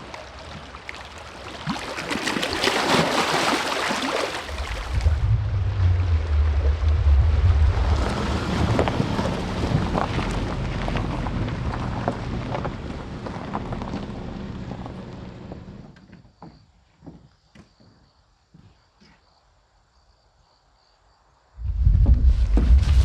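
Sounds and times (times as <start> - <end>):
wind buffeting microphone: 4.4 - 13.6, 21.6 - 23.0
crickets chirping: 16.2 - 21.6.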